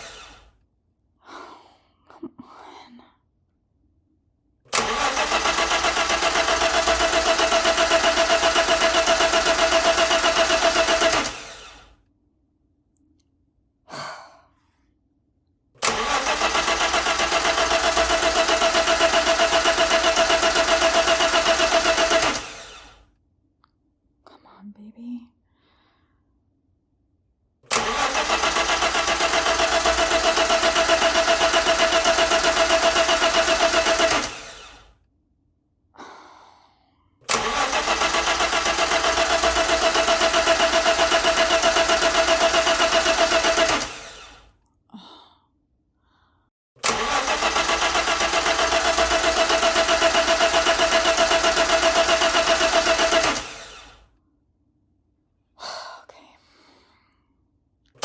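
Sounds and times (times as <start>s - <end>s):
car engine cranking: 4.7s - 11.8s, 15.8s - 23.0s, 27.7s - 34.9s, 37.3s - 44.5s, 46.8s - 54.0s.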